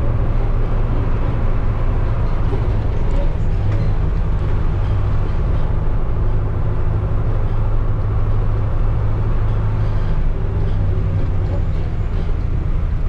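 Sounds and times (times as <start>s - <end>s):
vehicle engine and road drone: 0.0s - 13.0s.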